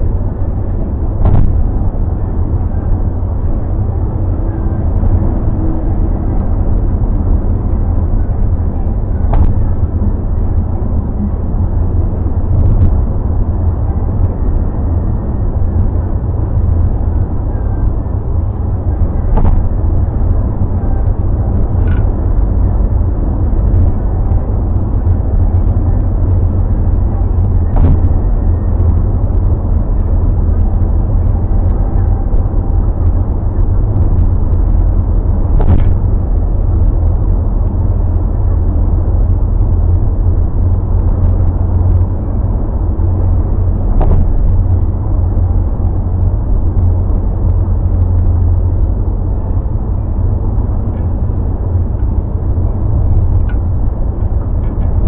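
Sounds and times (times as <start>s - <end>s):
car road and engine rumble: 0.0s - 55.0s.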